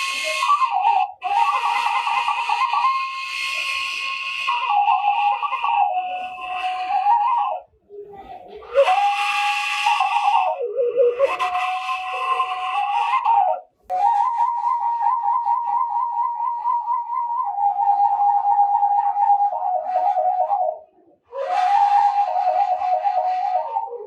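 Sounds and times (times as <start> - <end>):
end-blown flute melody: 8.6 - 24.0.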